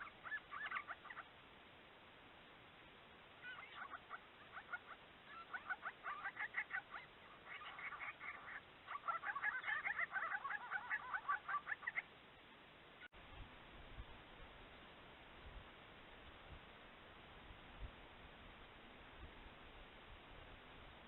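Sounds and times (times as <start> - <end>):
birds chattering harshly: 0.0 - 1.3, 3.4 - 12.1.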